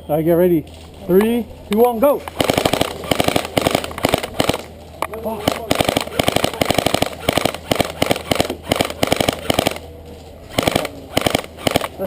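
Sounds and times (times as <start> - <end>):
airsoft rifle firing bursts: 2.0 - 9.9, 10.5 - 12.0.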